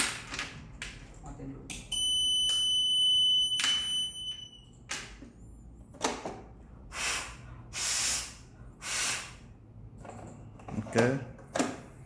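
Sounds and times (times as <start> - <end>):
high-pitched fire alarm tone: 1.9 - 4.7
short bursts of hiss: 6.9 - 9.4.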